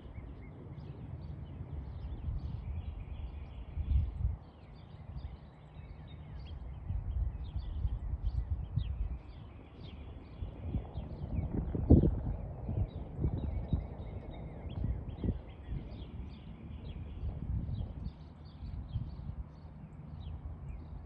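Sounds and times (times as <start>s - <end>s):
small birds chirping: 0.0s - 21.0s
low steady rumbling: 6.5s - 21.0s.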